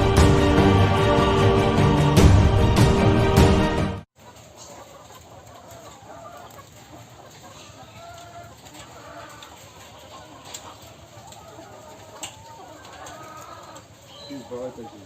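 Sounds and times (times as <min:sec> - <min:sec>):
hens clucking: 0:04.2 - 0:15.0.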